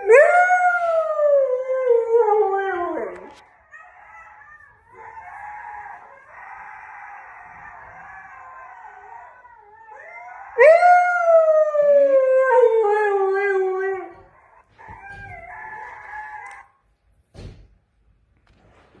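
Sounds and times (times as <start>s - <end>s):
husky howling: 0.0s - 16.7s
wolves howling together: 0.0s - 16.7s
brief thump: 17.3s - 17.8s.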